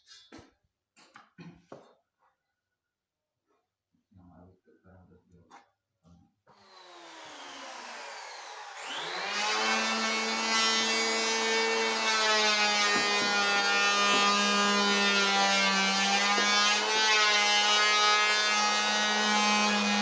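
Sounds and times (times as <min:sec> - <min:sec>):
table saw motor whine: 0:06.6 - 0:20.0.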